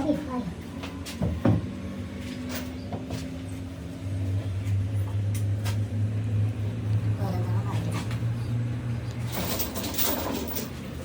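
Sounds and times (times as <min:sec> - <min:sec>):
engine humming: 0:00.0 - 0:11.0.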